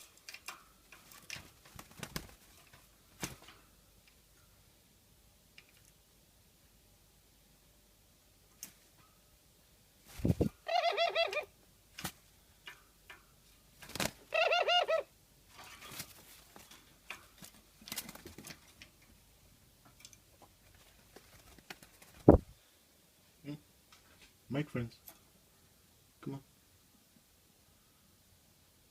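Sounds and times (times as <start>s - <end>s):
dove quavering calls: 10.6s - 11.5s, 14.3s - 15.1s.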